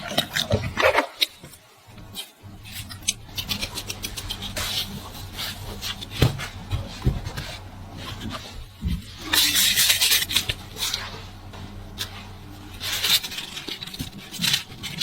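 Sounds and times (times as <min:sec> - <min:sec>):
loud rasping scrape: 0:08.1 - 0:15.0.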